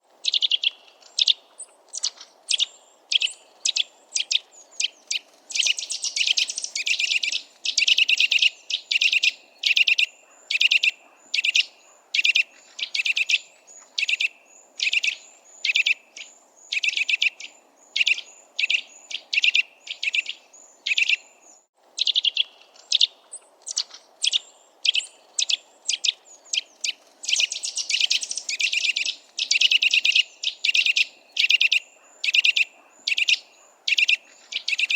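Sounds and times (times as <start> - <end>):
bird piping calls: 0.2 - 34.9.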